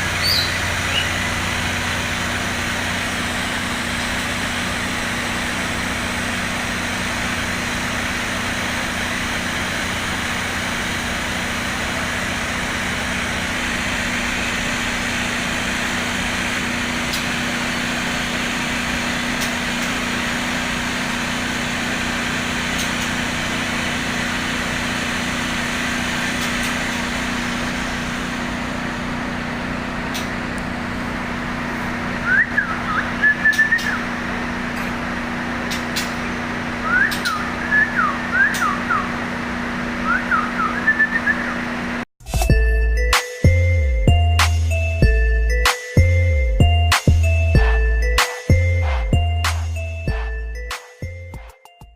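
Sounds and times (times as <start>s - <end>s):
songbird whistling: 0.2s - 1.3s, 32.2s - 34.1s, 36.8s - 39.2s, 40.0s - 41.6s.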